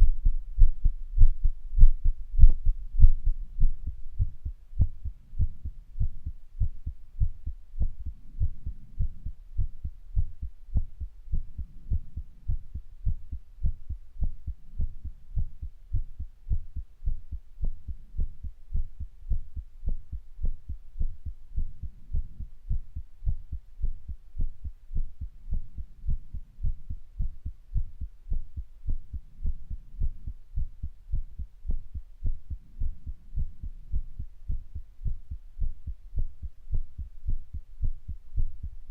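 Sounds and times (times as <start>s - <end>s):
heartbeat thuds: 0.0s - 38.8s.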